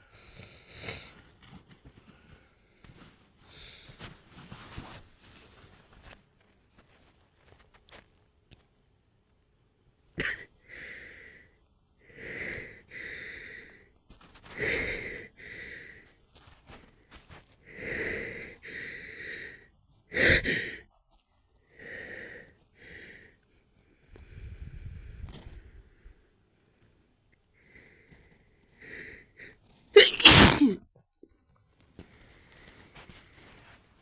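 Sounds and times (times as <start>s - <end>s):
woman's wheezy gasping breaths: 28.8s - 30.8s.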